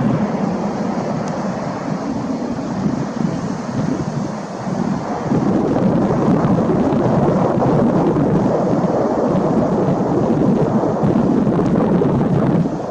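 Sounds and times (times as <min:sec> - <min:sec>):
jet engines roaring: 0:00.0 - 0:12.9.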